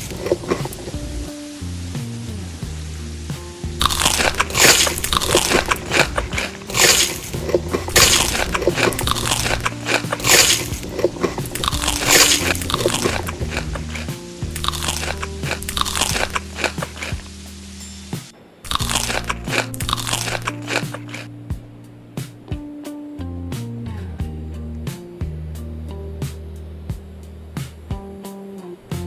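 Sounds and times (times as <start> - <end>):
crunchy food being chewed: 0.0 - 1.1, 3.8 - 17.4, 18.7 - 21.3
background music: 0.0 - 29.0.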